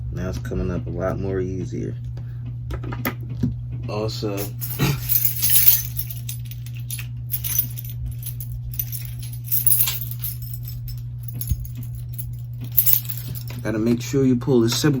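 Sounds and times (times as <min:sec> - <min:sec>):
steady low hum: 0:04.0 - 0:14.4.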